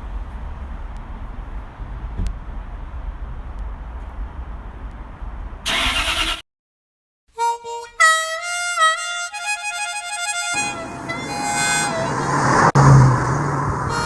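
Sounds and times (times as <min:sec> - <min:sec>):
steady rumbling noise: 0:00.0 - 0:05.6, 0:10.6 - 0:14.0
reedy melody: 0:07.4 - 0:14.0.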